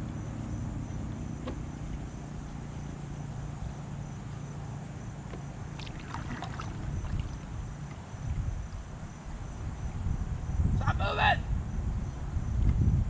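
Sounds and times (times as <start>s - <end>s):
sharp clicks or splashes: 5.8s - 8.0s
faint low hum: 5.8s - 9.7s
wind rumbling on microphone: 5.8s - 13.0s.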